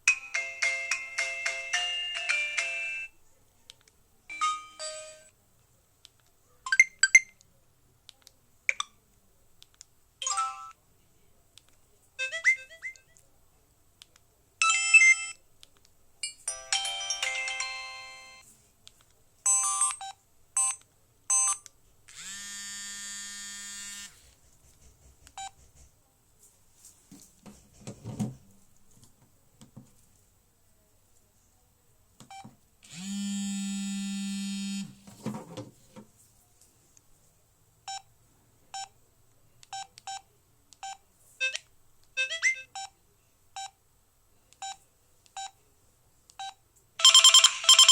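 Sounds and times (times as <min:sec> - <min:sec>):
phone vibration buzz: 0:22.1 - 0:24.2, 0:32.9 - 0:35.0
phone alert chimes: 0:47.0 - 0:47.9.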